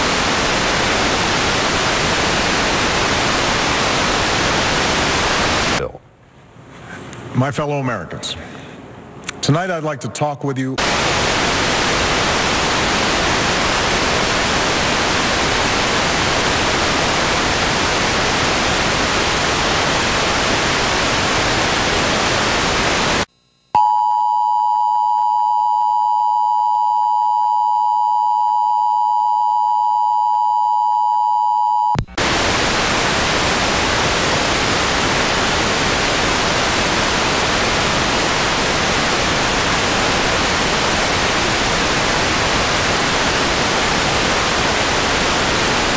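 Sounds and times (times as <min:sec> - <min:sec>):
television static hiss: 0:00.0 - 0:06.2, 0:09.1 - 0:23.3, 0:32.0 - 0:45.9.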